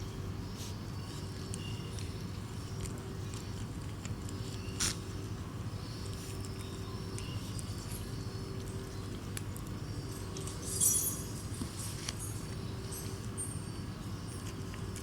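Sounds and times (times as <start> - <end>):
steady low hum: 0.0 - 15.0
animal chewing food: 0.5 - 15.0.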